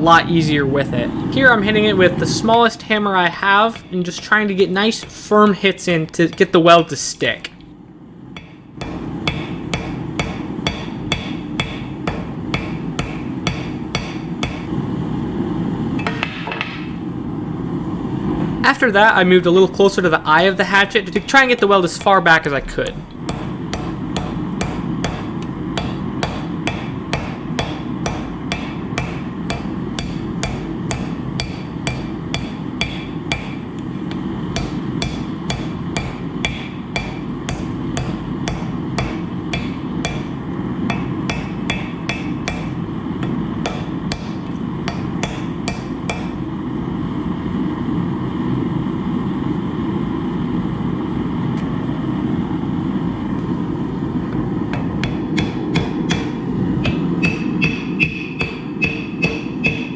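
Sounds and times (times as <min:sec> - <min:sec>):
low rushing noise: 0:00.0 - 0:06.3, 0:18.6 - 0:23.3
hammer blows on hot steel: 0:00.0 - 0:07.6, 0:08.4 - 0:14.8, 0:18.6 - 0:46.8, 0:54.2 - 0:59.9.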